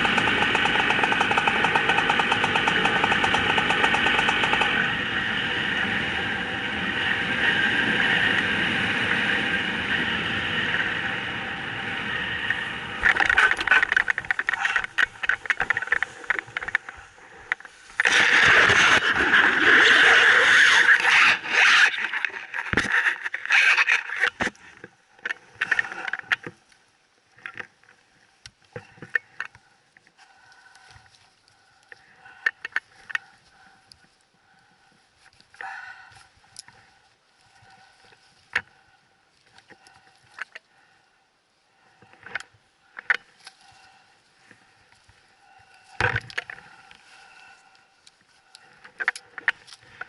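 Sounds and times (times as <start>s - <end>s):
scraping and crackling bursts: 0.0s - 5.0s, 13.0s - 29.6s
small engine running: 0.0s - 14.0s.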